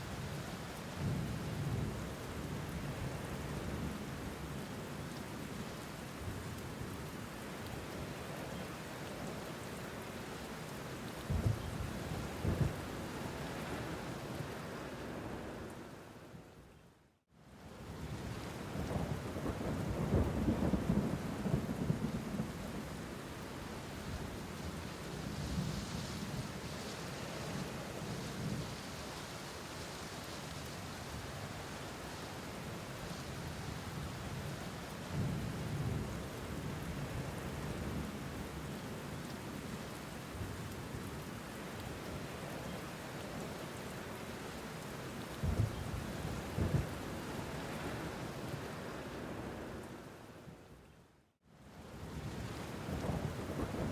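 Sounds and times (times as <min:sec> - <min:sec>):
steady rain: 0:00.0 - 0:53.9
low rumbles of thunder: 0:18.8 - 0:22.8, 0:45.4 - 0:47.0, 0:52.2 - 0:53.9
low rolling thunder: 0:45.4 - 0:47.0, 0:52.2 - 0:53.9.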